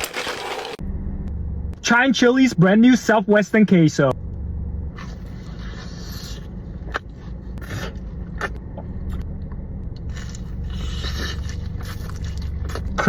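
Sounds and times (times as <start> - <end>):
food scraping and crunching: 0.0 - 0.8, 10.1 - 13.0
steady low rumble: 0.8 - 13.0.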